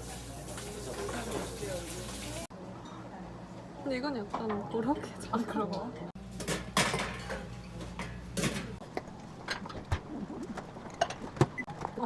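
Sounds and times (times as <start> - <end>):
tableware clicking and clinking: 6.3 - 8.8.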